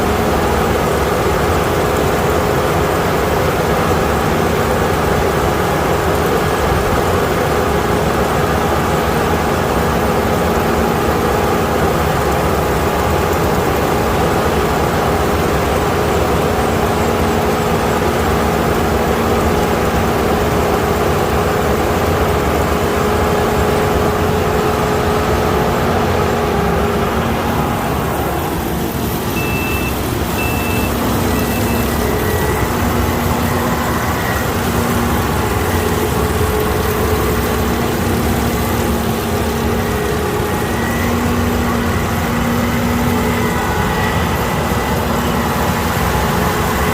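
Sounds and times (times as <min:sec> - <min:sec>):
combine harvester running: 0:00.0 - 0:46.9
short high beeps: 0:29.2 - 0:34.7.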